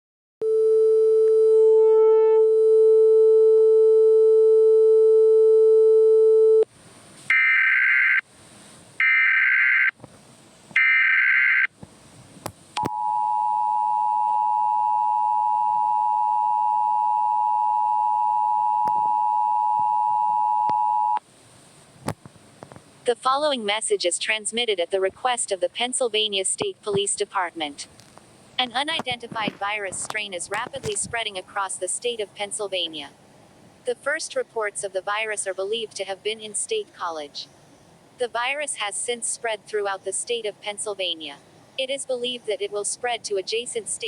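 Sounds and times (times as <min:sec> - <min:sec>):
two-tone attention signal: 0:12.8 - 0:21.2.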